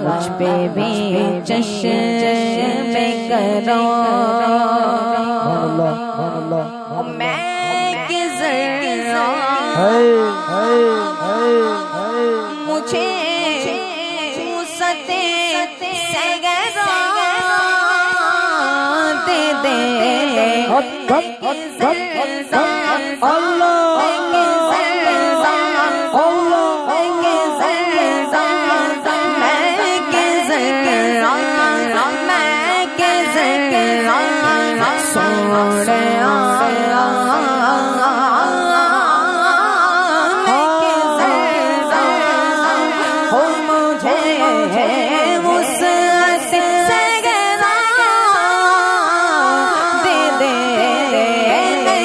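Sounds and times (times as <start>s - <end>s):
person singing unaccompanied: 0.0s - 52.0s.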